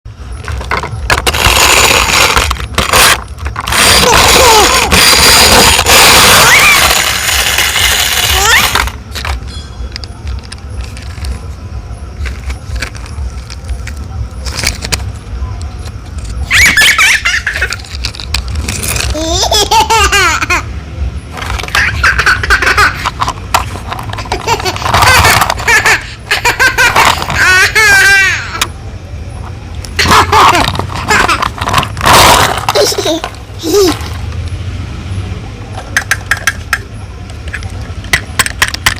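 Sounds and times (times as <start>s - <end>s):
plastic toy trucks rattling: 0.4s - 11.4s, 12.2s - 15.1s, 15.8s - 20.6s, 21.3s - 28.7s, 29.9s - 34.2s, 36.0s - 36.8s, 37.4s - 38.9s
small child laughing and squealing: 3.7s - 8.9s, 16.4s - 18.0s, 19.0s - 20.7s, 21.6s - 23.2s, 24.2s - 28.6s, 30.0s - 34.2s
sharp clicks and knocks: 35.8s - 38.9s.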